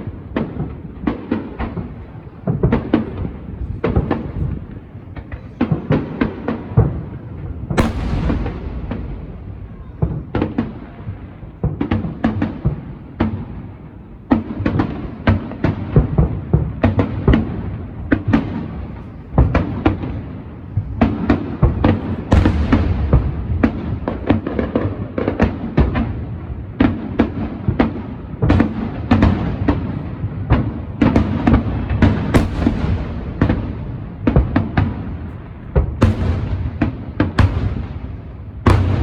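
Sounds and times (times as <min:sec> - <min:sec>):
fireworks bangs and booms: 0:00.0 - 0:39.0
low rumble of bursts: 0:07.0 - 0:11.6.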